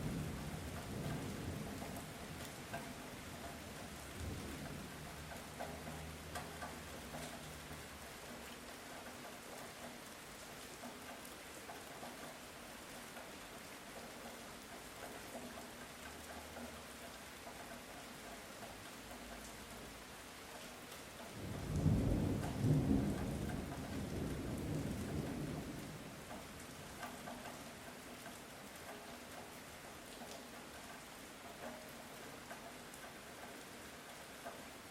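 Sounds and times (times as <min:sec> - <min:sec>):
light rain falling: 0:00.0 - 0:34.9
distant thunder rumbling: 0:21.4 - 0:26.4.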